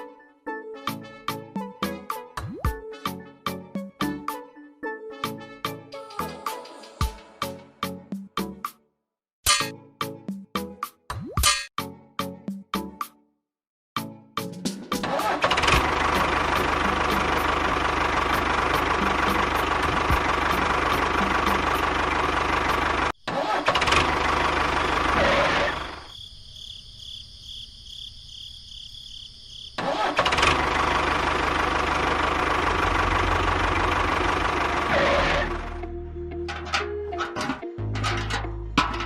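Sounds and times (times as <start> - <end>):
small engine running: 15.0 - 26.1, 29.8 - 35.9.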